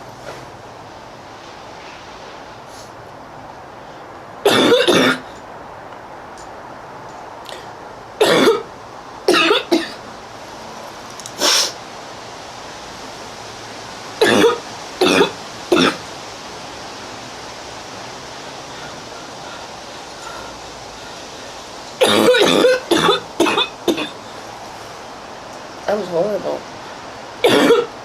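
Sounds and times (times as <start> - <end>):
steady hiss: 0.0 - 28.0
woman coughing: 22.0 - 24.1, 27.4 - 27.9.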